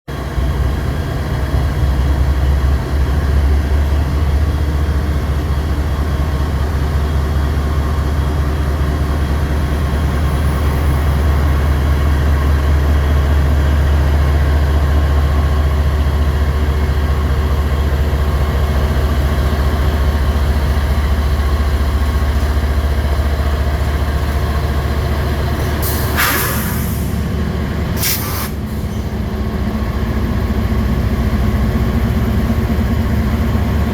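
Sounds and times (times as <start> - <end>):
diesel locomotive engine rumble: 0.1 - 33.9
air hiss bursts: 25.8 - 27.2, 28.0 - 28.8.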